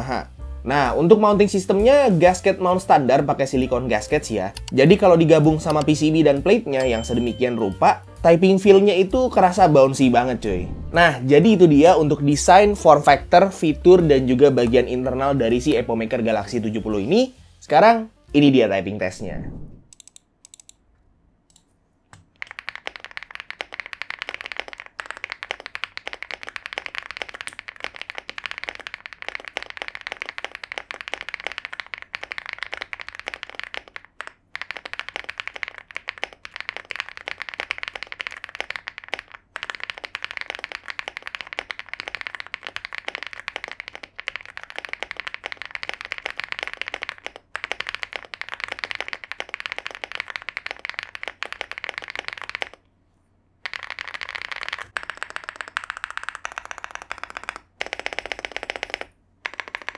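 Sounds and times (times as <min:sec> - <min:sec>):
fast mechanical keyboard typing: 0:01.2 - 0:07.7, 0:22.2 - 0:52.8, 0:53.6 - 0:59.9.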